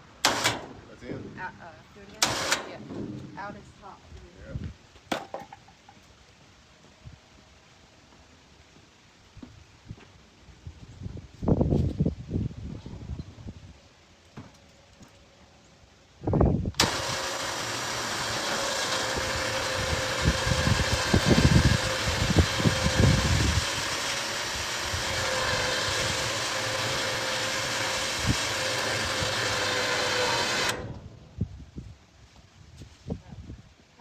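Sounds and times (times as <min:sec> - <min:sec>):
vehicle engine running: 0:16.8 - 0:31.2.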